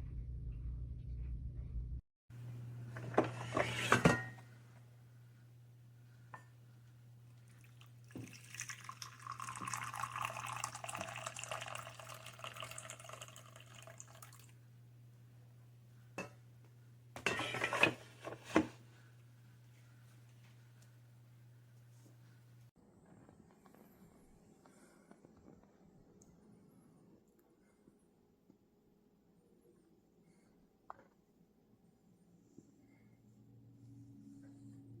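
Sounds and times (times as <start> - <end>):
low electrical hum: 0.0 - 22.7
dishware clattering: 3.0 - 4.4, 17.2 - 18.8
water running: 7.2 - 14.6.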